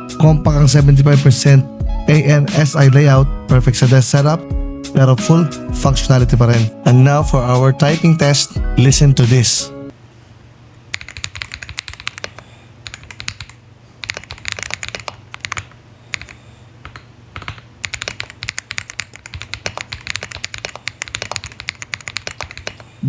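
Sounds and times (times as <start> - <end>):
mechanical keyboard typing: 10.9 - 22.9.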